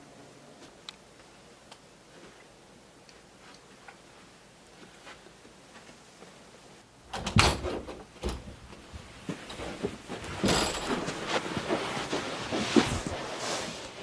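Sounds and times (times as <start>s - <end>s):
knocks and clattering: 9.3s - 11.4s.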